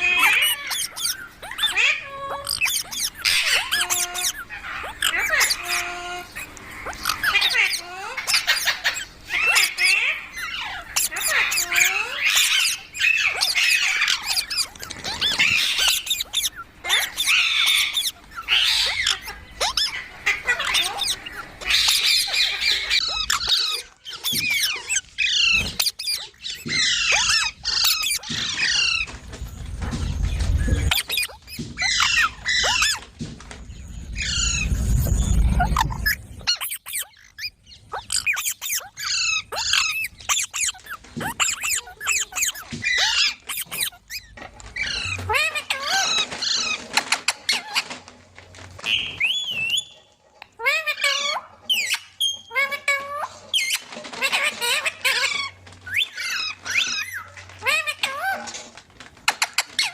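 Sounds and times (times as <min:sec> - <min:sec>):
parrot squawking and chattering: 0:00.0 - 0:33.2, 0:34.1 - 0:48.1, 0:48.8 - 0:59.9
low rumble: 0:33.7 - 0:36.5.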